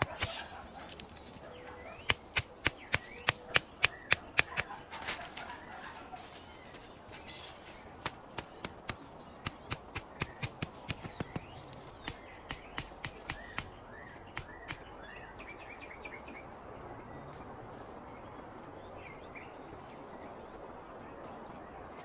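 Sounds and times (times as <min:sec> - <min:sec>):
bird chirping: 0:00.0 - 0:17.4
sharp snaps or clicks: 0:02.0 - 0:04.7, 0:08.0 - 0:13.7, 0:14.3 - 0:14.8.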